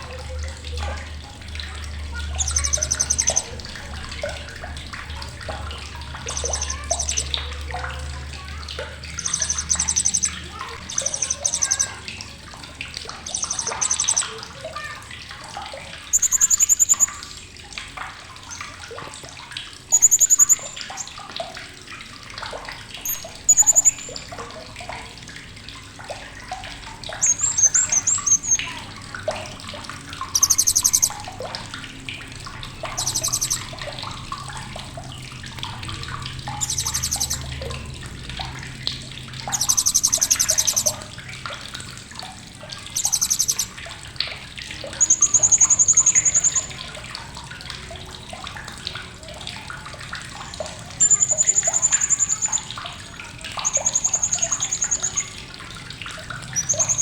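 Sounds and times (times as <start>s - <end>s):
soft bird chirps: 0.0s - 17.5s, 19.9s - 21.3s, 23.0s - 24.6s, 27.1s - 29.6s, 30.2s - 31.7s, 32.7s - 34.2s, 36.5s - 37.8s, 39.4s - 41.1s, 42.7s - 43.8s, 44.7s - 47.0s, 50.9s - 55.5s, 56.4s - 57.0s
parrot chattering trills: 2.1s - 4.1s, 6.2s - 8.2s, 9.0s - 12.1s, 13.1s - 15.0s, 16.0s - 17.4s, 19.9s - 21.2s, 23.0s - 24.3s, 27.2s - 28.8s, 30.2s - 31.3s, 32.9s - 33.7s, 36.6s - 37.6s, 39.5s - 41.1s, 42.9s - 43.8s, 44.9s - 46.8s, 51.0s - 52.7s, 53.6s - 55.4s, 56.5s - 57.0s.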